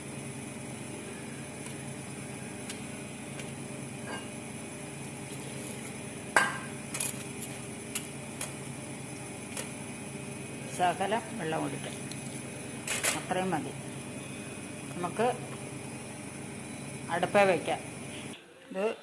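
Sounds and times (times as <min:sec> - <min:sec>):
steady low hum: 0:00.0 - 0:18.4
sharp knock on cooking pot: 0:06.4 - 0:06.8
utensil clinking against pot: 0:06.4 - 0:07.3.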